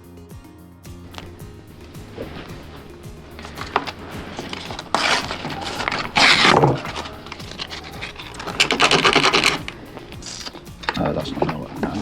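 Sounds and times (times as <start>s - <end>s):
quiet background music: 0.0s - 12.0s
wooden parts scraping: 1.1s - 12.0s.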